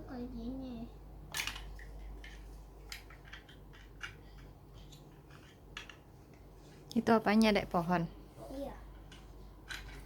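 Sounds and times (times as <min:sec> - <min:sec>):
plastic toy bricks clicking: 0:01.3 - 0:06.0.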